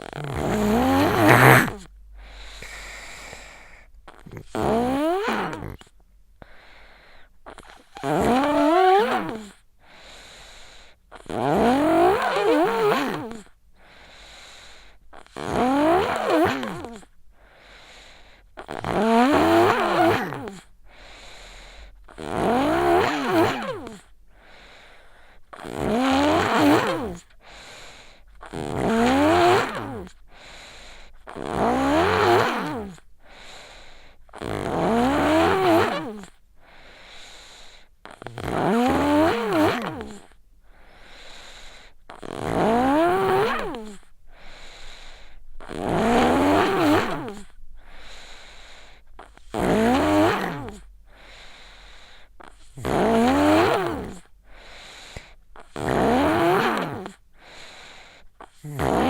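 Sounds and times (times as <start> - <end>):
quiet breathing: 0.0 - 4.7, 5.4 - 8.0, 9.5 - 11.2, 13.2 - 15.3, 17.0 - 18.6, 20.6 - 22.3, 23.8 - 25.7, 27.2 - 28.5, 30.1 - 31.4, 33.0 - 34.4, 36.3 - 38.4, 39.8 - 42.4, 43.7 - 45.8, 47.1 - 49.6, 50.8 - 52.8, 54.2 - 55.8, 57.2 - 58.7
child snoring: 0.0 - 59.0.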